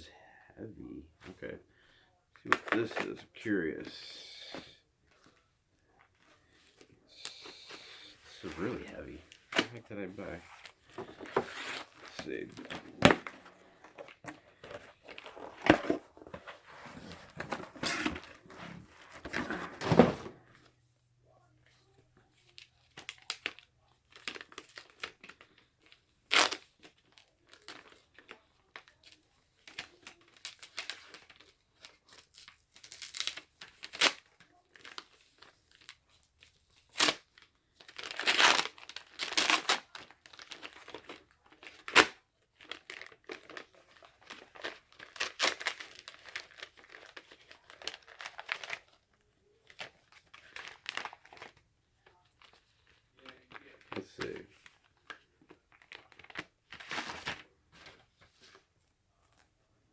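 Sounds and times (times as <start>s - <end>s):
packaging being torn and crinkled: 22.5s - 54.4s.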